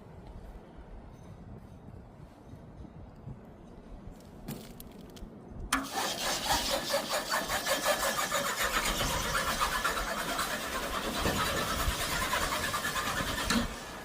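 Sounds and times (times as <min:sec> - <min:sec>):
small engine running: 0:05.8 - 0:14.0.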